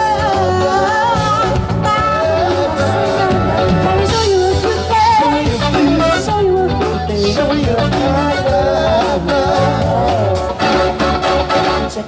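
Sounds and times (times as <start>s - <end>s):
live band upbeat groove: 0.0s - 12.0s.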